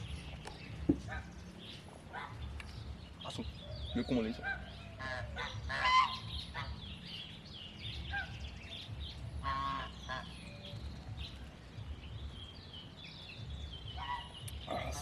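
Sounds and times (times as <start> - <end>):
birds chirping: 0.0 - 15.0
longer pitched bird call: 13.7 - 15.0.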